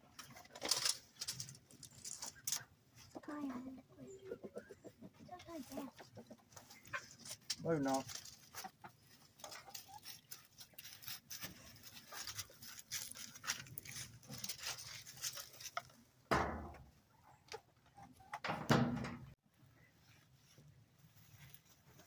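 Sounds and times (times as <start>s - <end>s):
farmyard animal calls: 1.9s - 16.0s, 16.6s - 18.5s.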